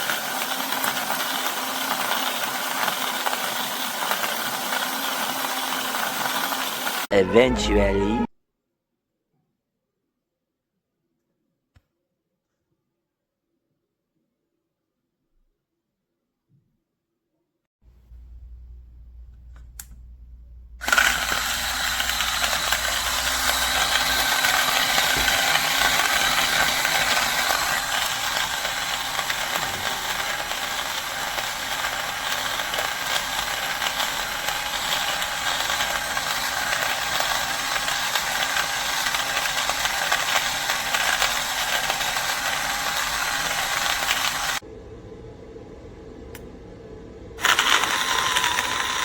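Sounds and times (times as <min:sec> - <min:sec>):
grinder click: 0:00.0 - 0:07.0, 0:20.8 - 0:44.6
coffee grinder grinding beans: 0:00.0 - 0:07.1, 0:20.8 - 0:44.6, 0:47.4 - 0:49.0.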